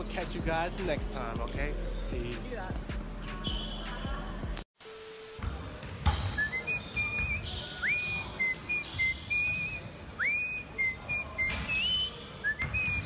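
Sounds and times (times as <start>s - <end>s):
shoes squeaking on gym court: 3.2s - 4.2s, 5.5s - 13.0s
ball bouncing: 5.4s - 6.4s.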